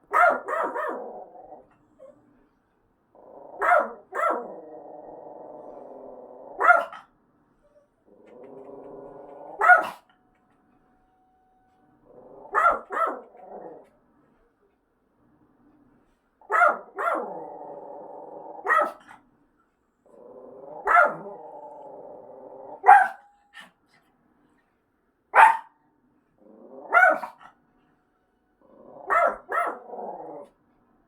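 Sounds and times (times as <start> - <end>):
dog barking: 0.1 - 1.0, 3.6 - 4.5, 6.6 - 7.1, 9.6 - 10.1, 12.5 - 13.3, 16.5 - 17.4, 18.6 - 19.1, 20.8 - 21.3, 22.8 - 23.3, 25.4 - 25.8, 26.9 - 27.4, 29.0 - 29.9.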